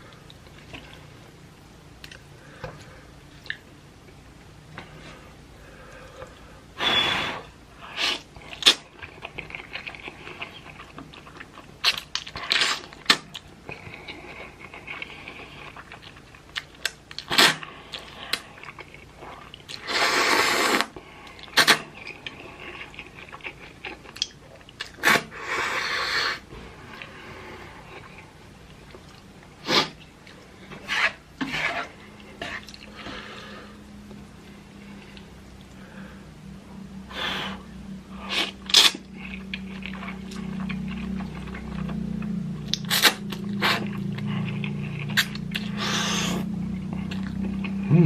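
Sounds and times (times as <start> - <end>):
wet clicks and chewing: 2.0 - 2.2, 8.4 - 19.8, 21.2 - 25.0, 38.4 - 45.7
loud noodle slurps: 19.8 - 20.9.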